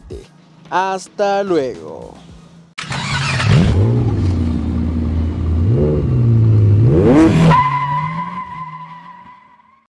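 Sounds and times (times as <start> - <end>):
car engine revving: 2.8 - 8.5.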